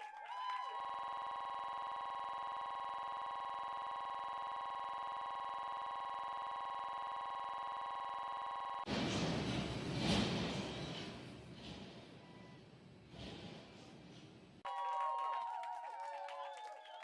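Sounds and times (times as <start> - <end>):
electronic buzzing tone: 0.0 - 8.9.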